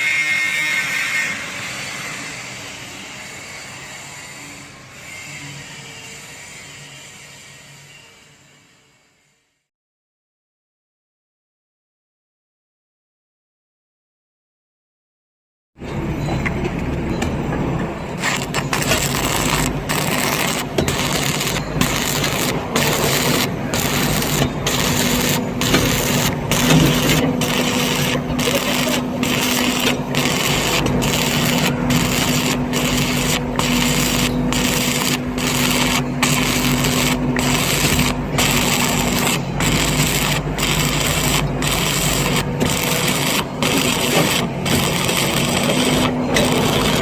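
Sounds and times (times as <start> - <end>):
welding arc crackling: 18.2 - 47.0.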